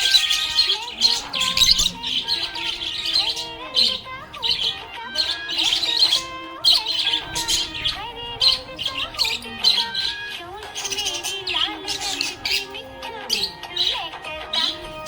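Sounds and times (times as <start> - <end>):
background music: 0.0 - 15.0
budgerigar chirping: 0.0 - 15.0.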